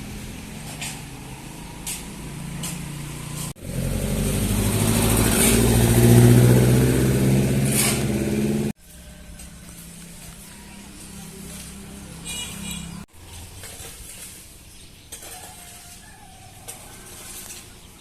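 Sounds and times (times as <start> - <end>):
vehicle engine running: 0.0 - 13.5.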